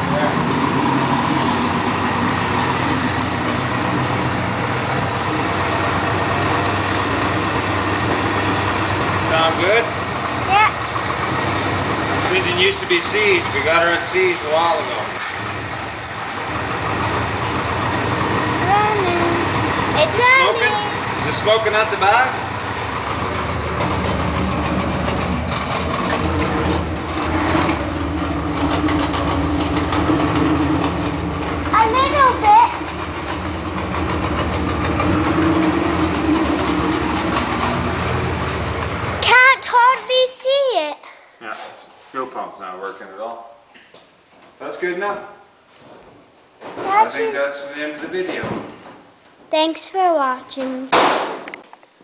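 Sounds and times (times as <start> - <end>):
engine running: 0.0 - 40.0.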